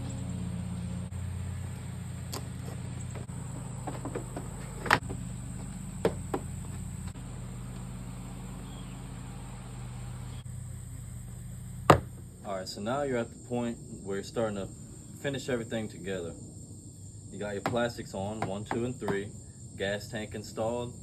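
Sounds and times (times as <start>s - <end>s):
low steady hum: 0.0s - 21.0s
insect chirring: 10.3s - 21.0s.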